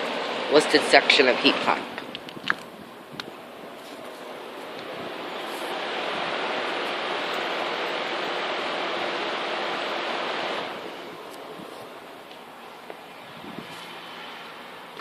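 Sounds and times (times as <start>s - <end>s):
heat pump fan air rush: 0.0s - 15.0s.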